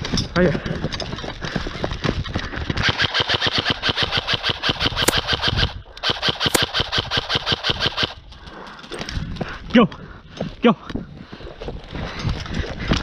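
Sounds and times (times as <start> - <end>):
airsoft gun firing bursts: 2.8 - 8.2.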